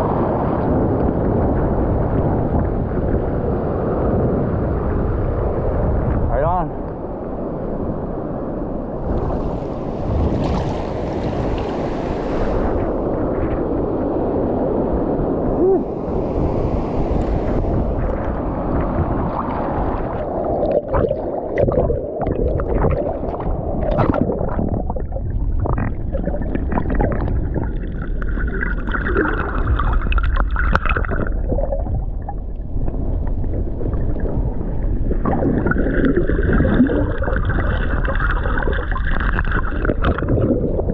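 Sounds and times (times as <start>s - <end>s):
sea water sloshing: 9.0s - 13.9s, 15.8s - 40.9s
knocks and splashes: 10.0s - 12.2s.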